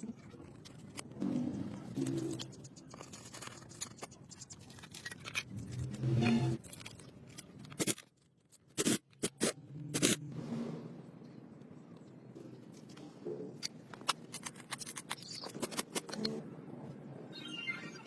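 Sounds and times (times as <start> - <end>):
scraping and clicking of hand work: 12.6 - 16.4.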